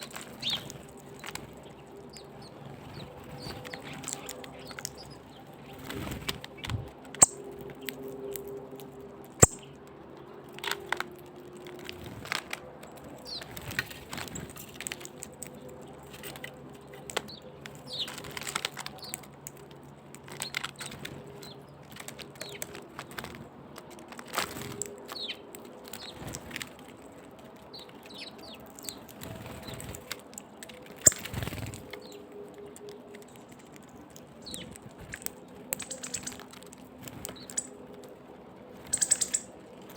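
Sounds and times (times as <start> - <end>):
small birds chirping: 0.0 - 11.0, 11.7 - 39.9
wing flutters: 2.6 - 7.0, 28.8 - 32.1, 33.3 - 38.0, 38.7 - 39.9.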